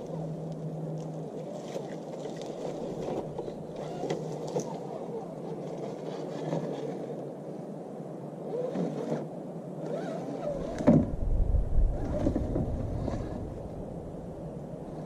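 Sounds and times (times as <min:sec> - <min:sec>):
small clicks and scrapes from tyres: 0:00.0 - 0:07.4, 0:08.5 - 0:11.1
toy car motor whirring: 0:03.8 - 0:07.2, 0:08.4 - 0:10.8.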